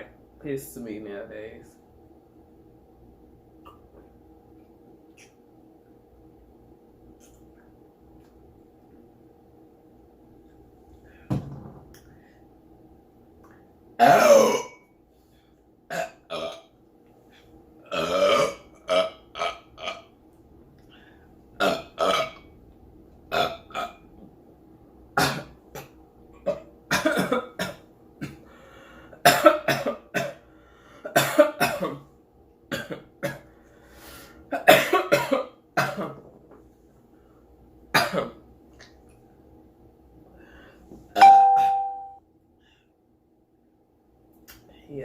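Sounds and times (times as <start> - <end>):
woman burping loudly: 14.0 - 14.8, 15.9 - 16.6, 17.9 - 20.1, 21.6 - 22.5
woman retching: 14.0 - 14.8, 15.9 - 16.7, 17.9 - 20.1, 21.6 - 22.5, 23.3 - 24.0.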